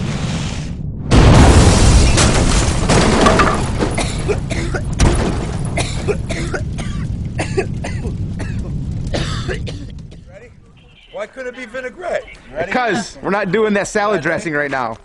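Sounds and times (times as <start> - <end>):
firework boom: 0.2 - 11.1.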